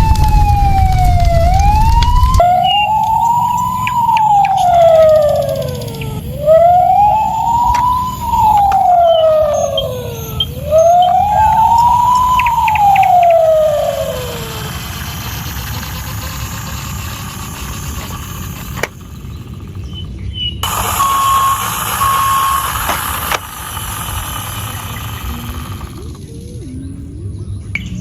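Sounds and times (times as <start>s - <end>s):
toy siren wailing: 0.0s - 26.4s
steady low hum: 0.0s - 27.2s
click: 3.8s - 6.6s.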